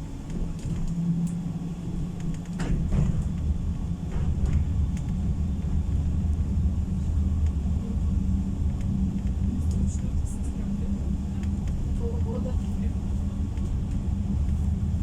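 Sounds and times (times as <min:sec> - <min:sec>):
tram rumbling on rails: 0:00.0 - 0:15.0
light clicks and rattles: 0:00.2 - 0:01.4, 0:02.1 - 0:03.5, 0:04.1 - 0:05.8, 0:08.7 - 0:14.6.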